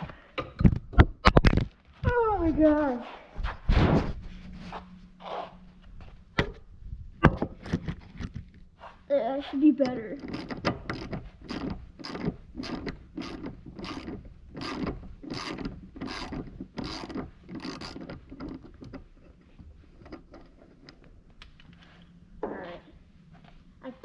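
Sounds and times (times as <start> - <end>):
ratchet wrench clicking: 10.2 - 19.0.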